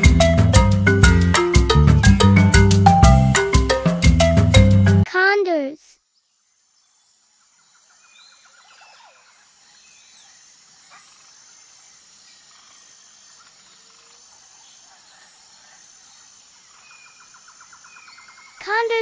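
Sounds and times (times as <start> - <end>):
insect-like hiss: 6.0 - 19.0.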